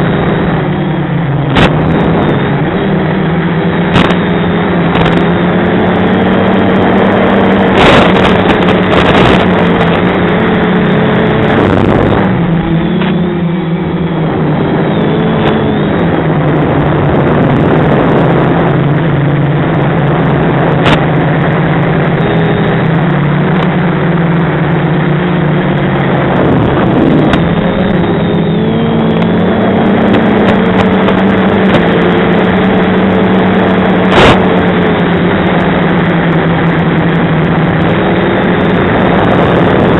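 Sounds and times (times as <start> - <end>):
rushing noise: 0.0 - 39.9
quadcopter motors whining: 26.2 - 35.5.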